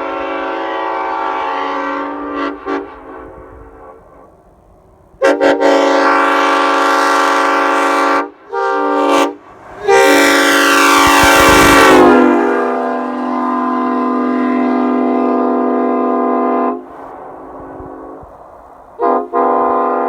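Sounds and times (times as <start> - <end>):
train horn blasts: 0.0 - 4.3, 5.2 - 20.0.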